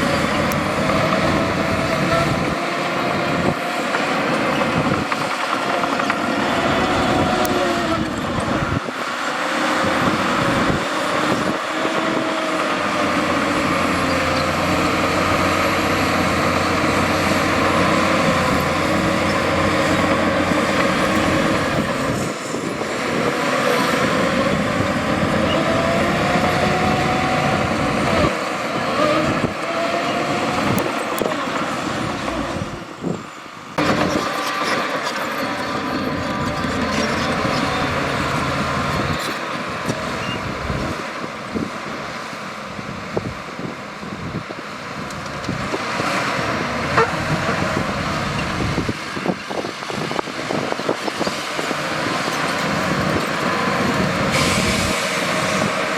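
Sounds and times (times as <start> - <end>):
machinery whining tone: 0.0 - 41.0
heavy diesel machinery engine: 0.0 - 55.9.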